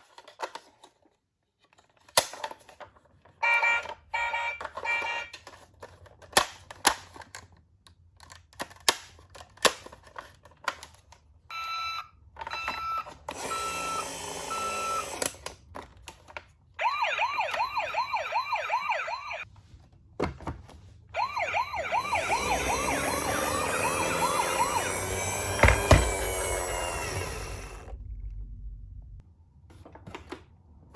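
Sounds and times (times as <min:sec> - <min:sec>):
toy electronic siren wailing: 0:03.4 - 0:05.4, 0:11.5 - 0:15.3, 0:16.8 - 0:19.4, 0:21.2 - 0:27.8.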